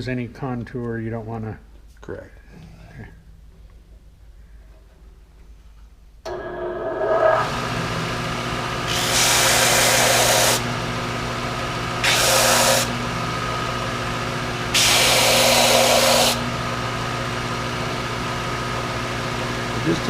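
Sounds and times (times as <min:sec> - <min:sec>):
belt sander motor hum: 0:06.3 - 0:20.0.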